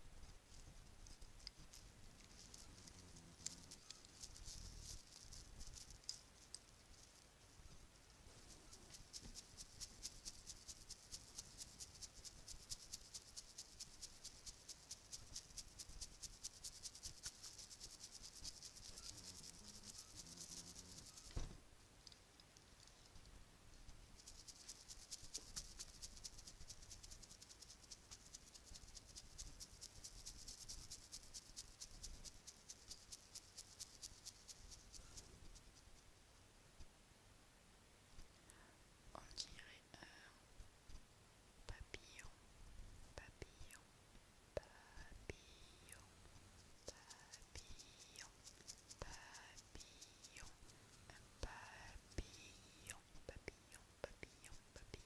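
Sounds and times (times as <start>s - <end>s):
soft knock: 21.3s - 21.6s.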